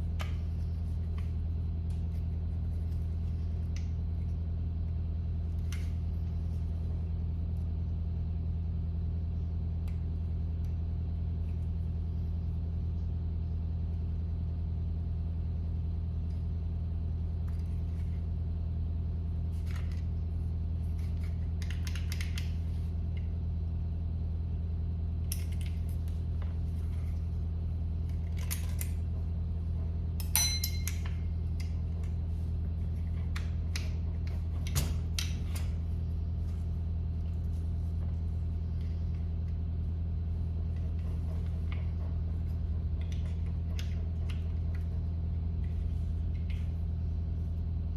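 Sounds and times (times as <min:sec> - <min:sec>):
steady low hum: 0:00.0 - 0:47.9
ringing metal clink: 0:30.3 - 0:31.1.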